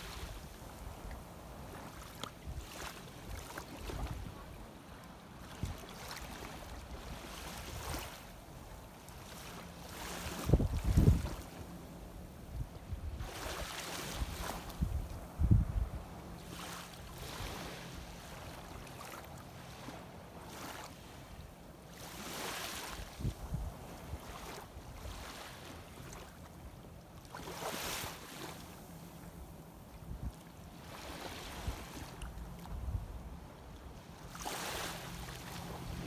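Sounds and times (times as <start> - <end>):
seawater sloshing and lapping: 1.0 - 4.4, 5.4 - 11.7, 24.0 - 28.8, 33.9 - 36.0.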